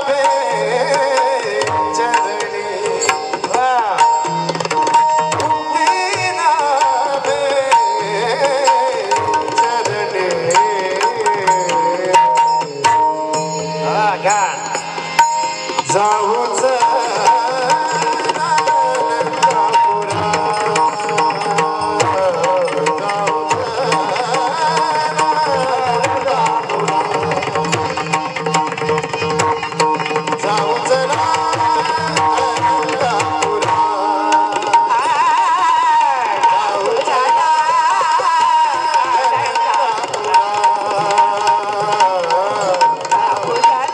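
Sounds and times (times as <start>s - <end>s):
person singing: 0.0s - 28.6s, 29.2s - 43.9s
hand drum playing: 0.7s - 13.8s, 15.2s - 35.0s.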